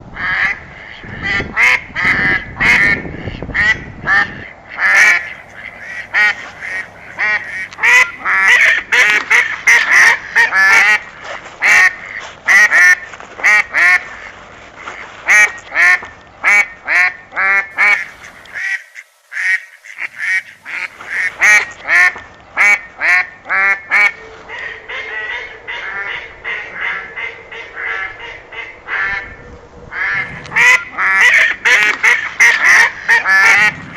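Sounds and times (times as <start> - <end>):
geese honking: 4.8 - 11.0, 17.4 - 29.3, 29.9 - 33.8.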